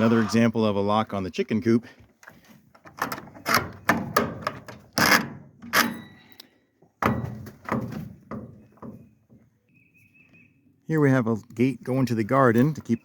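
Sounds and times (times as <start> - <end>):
wooden door and latch rattling: 2.8 - 6.2, 7.0 - 9.4.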